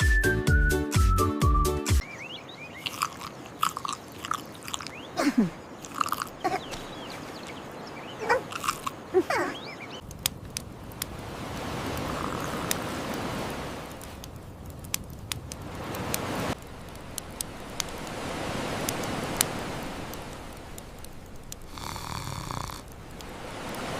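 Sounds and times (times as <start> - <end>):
squeaky chirps and clicks: 2.0 - 5.2, 5.8 - 10.2
sea waves washing in: 2.0 - 23.9.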